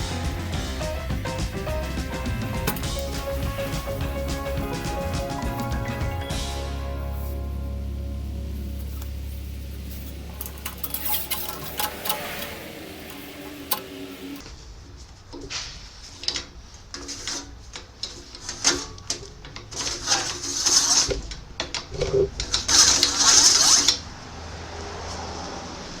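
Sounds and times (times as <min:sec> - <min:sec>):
metal scraping and rasping: 0:08.6 - 0:14.4, 0:16.9 - 0:24.1.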